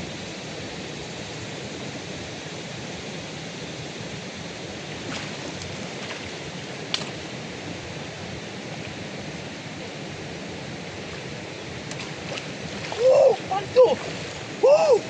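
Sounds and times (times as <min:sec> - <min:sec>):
rushing water: 0:04.0 - 0:15.0.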